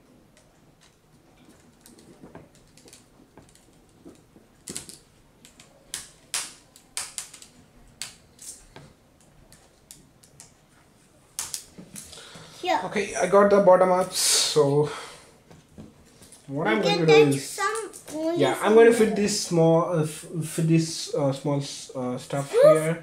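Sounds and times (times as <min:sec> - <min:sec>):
clicks and taps on laptop plastic: 0:01.4 - 0:08.2.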